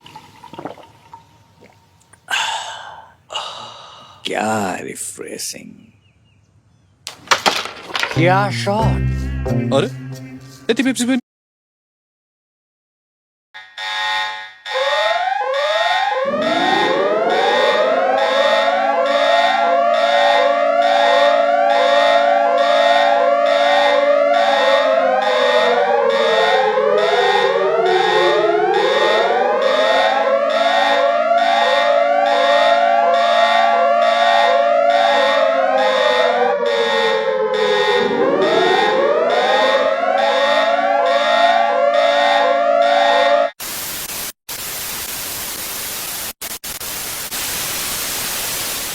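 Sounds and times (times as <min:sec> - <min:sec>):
electronic alert alarm pulses: 0:08.2 - 0:10.7, 0:13.6 - 0:43.5
wailing siren: 0:13.8 - 0:43.6.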